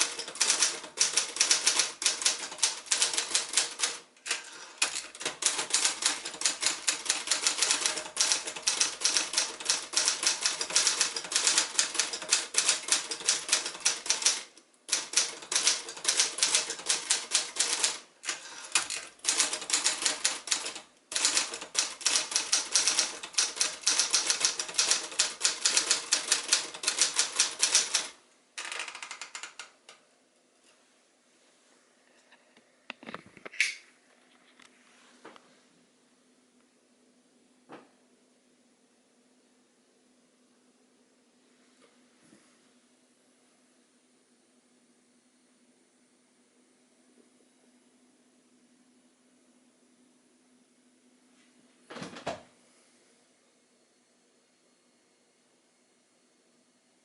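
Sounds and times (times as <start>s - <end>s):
typewriter keys clattering: 0.0s - 29.7s.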